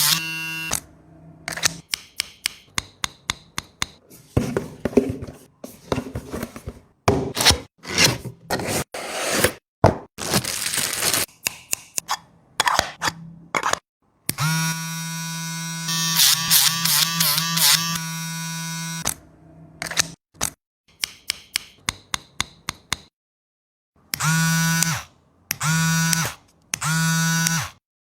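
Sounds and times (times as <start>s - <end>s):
box and wrapping rustling: 4.2s - 6.9s, 10.2s - 11.3s.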